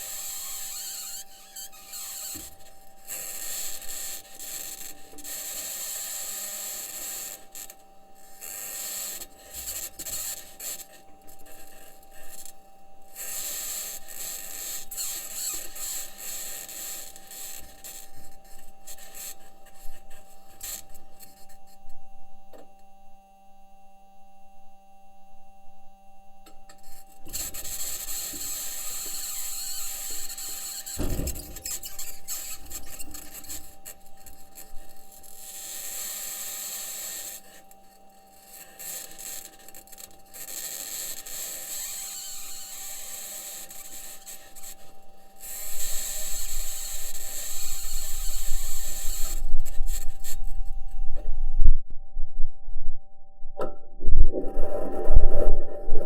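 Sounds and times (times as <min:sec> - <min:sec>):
faint electrical tone: 0:00.0 - 0:56.0
knock: 0:31.0 - 0:31.6
high-pitched scratching noise: 0:54.2 - 0:56.0.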